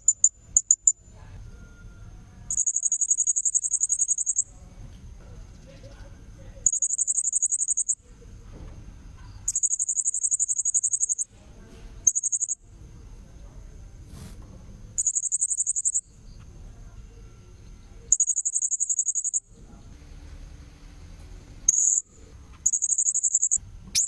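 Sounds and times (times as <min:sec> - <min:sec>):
thin steady high tone: 0:00.0 - 0:04.6, 0:05.6 - 0:08.2, 0:09.5 - 0:11.3, 0:12.1 - 0:12.7, 0:15.0 - 0:19.7, 0:21.2 - 0:24.0
low background rumble: 0:04.3 - 0:18.2, 0:19.5 - 0:24.0.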